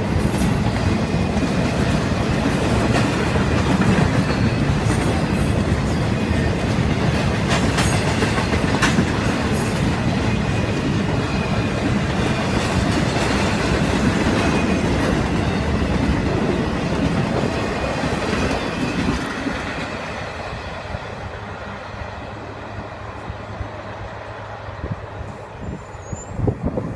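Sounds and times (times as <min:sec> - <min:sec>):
wheels clacking over rail joints: 0:00.0 - 0:20.4.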